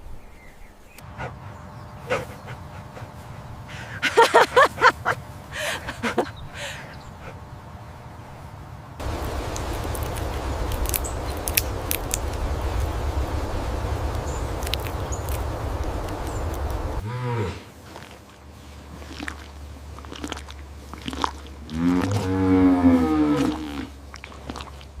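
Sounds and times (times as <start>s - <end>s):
rough crunching noise: 9.0s - 17.0s
animal lowing call: 9.0s - 17.7s, 21.6s - 24.0s.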